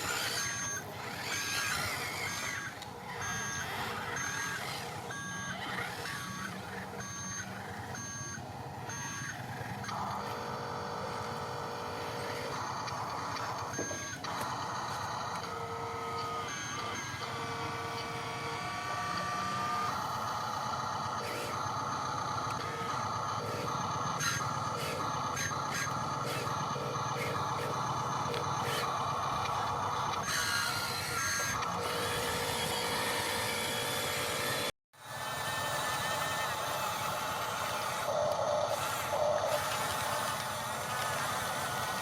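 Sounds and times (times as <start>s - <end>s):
electronic reversing beeper: 0.0s - 10.0s.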